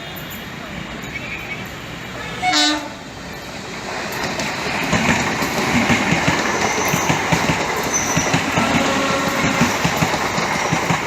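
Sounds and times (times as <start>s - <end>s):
train wheels clacking over joints: 3.8s - 11.0s.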